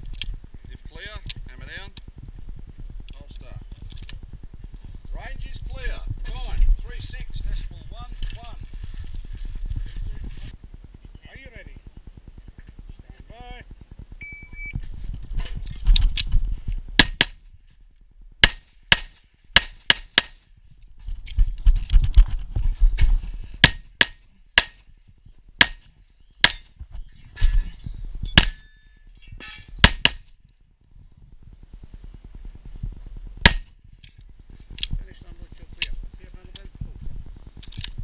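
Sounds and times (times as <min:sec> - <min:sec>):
shot timer beep: 0:14.2 - 0:14.8
pistol shots: 0:33.4 - 0:33.7.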